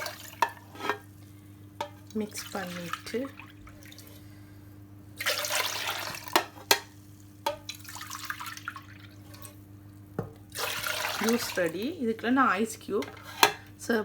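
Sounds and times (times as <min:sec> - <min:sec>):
steady low hum: 0:00.0 - 0:14.0
liquid swishing in a jug: 0:05.2 - 0:06.6, 0:07.8 - 0:09.7, 0:10.5 - 0:11.8.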